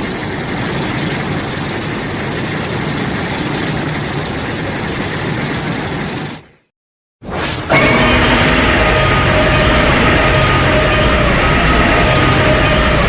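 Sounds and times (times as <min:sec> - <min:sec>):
monster rumble: 0:07.6 - 0:13.0.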